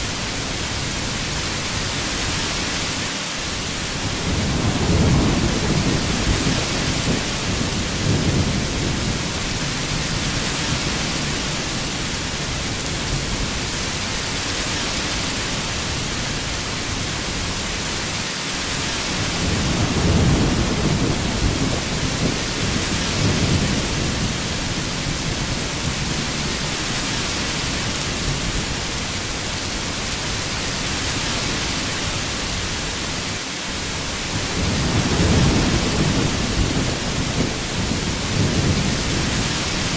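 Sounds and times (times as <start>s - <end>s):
heavy rain: 0.0s - 39.9s
low thunder rumbling: 3.9s - 13.6s, 19.3s - 26.7s, 34.2s - 39.9s.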